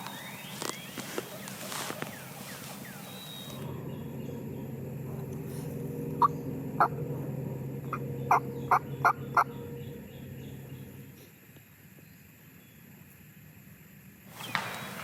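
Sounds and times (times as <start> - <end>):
low steady hum: 0.0 - 14.3
turkey calling: 7.9 - 11.2.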